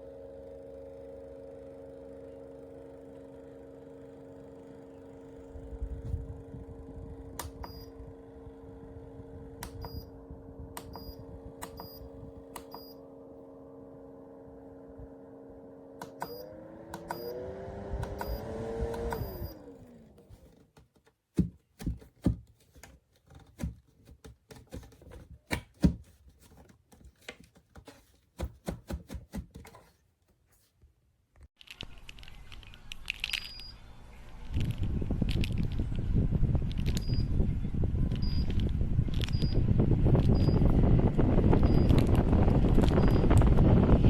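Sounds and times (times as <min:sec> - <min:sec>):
fan motor humming: 0:00.0 - 0:23.9, 0:33.8 - 0:44.0.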